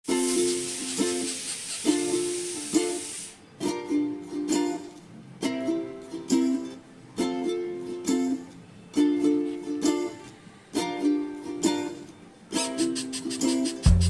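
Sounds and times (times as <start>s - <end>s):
steady hiss: 0.1s - 3.5s, 12.6s - 14.0s
plucked string music: 3.5s - 14.0s.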